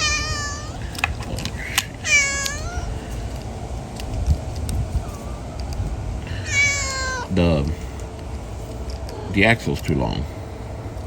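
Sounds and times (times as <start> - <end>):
cat meowing: 0.0 - 0.9, 2.0 - 3.0, 6.3 - 7.3, 9.0 - 9.6.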